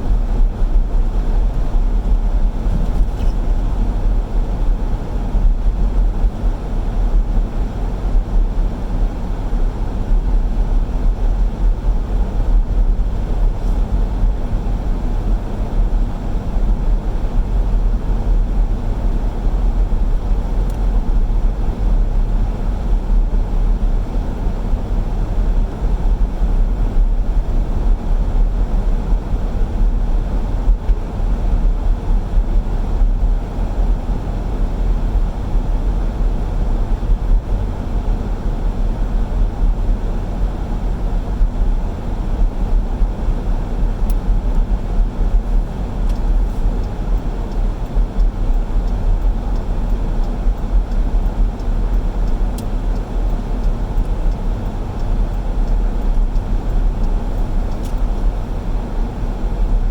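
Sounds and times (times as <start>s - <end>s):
car road and engine rumble: 0.0s - 59.9s.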